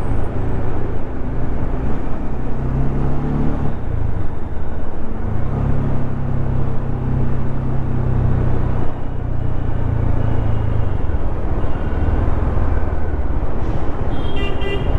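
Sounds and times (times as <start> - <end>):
road and wind noise: 0.0 - 14.9.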